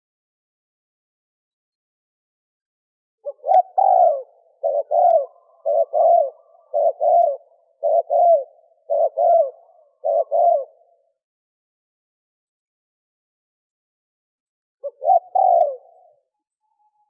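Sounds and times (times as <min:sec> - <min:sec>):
dove cooing: 0:03.2 - 0:11.0, 0:14.8 - 0:16.3.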